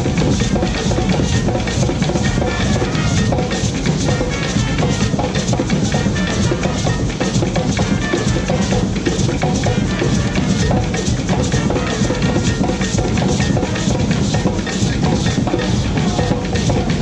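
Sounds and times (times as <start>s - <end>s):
loud music with driving drum beat: 0.0s - 17.0s.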